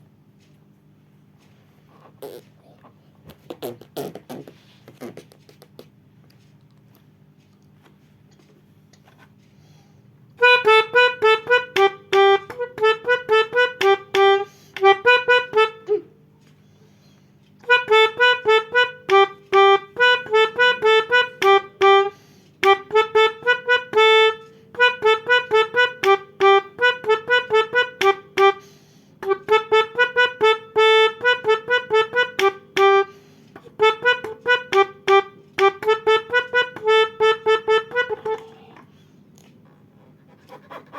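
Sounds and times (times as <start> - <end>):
melodica playing short notes: 10.4 - 16.1, 17.6 - 38.7.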